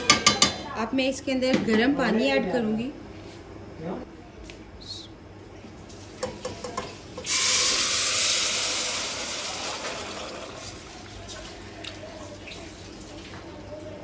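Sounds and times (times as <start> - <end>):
water poured into pan: 7.2 - 11.0
loud hiss of steam: 7.3 - 9.9.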